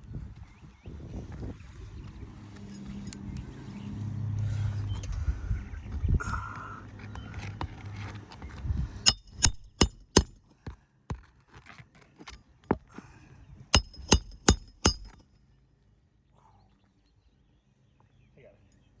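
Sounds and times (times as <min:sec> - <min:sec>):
hammer ringing on nail: 0:09.1 - 0:10.4, 0:13.8 - 0:15.2.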